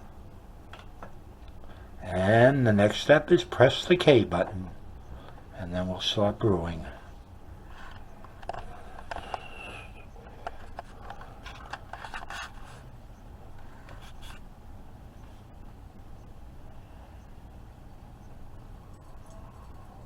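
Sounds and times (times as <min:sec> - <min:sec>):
light clicks and scrapes: 0:07.7 - 0:12.9, 0:13.6 - 0:14.4.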